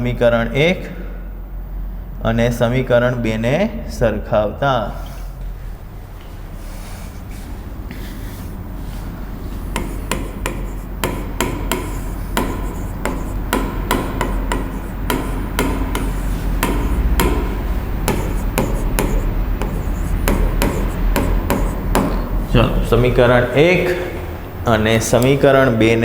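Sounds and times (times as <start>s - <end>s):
low mains hum: 0.0s - 26.0s
sharp knocks: 9.7s - 22.4s.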